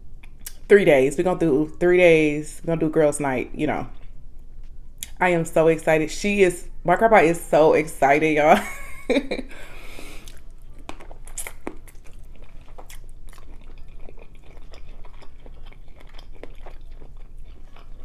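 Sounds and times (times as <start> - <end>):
close chewing with wet clicks: 0.2 - 0.6, 3.9 - 4.2, 10.2 - 18.0.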